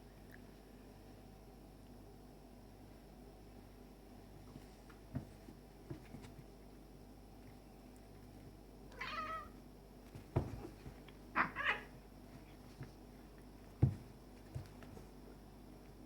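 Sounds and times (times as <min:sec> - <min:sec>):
cat meowing: 0:08.9 - 0:09.5, 0:11.4 - 0:11.9
dull thumps: 0:10.1 - 0:11.1, 0:13.7 - 0:15.2.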